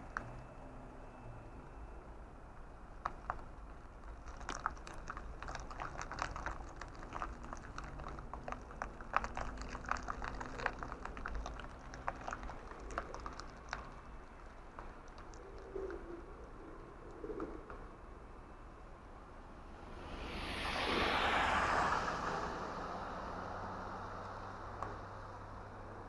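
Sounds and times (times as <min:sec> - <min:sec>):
car road rumble: 0:00.0 - 0:26.0
light clicks and ticks: 0:03.0 - 0:16.2.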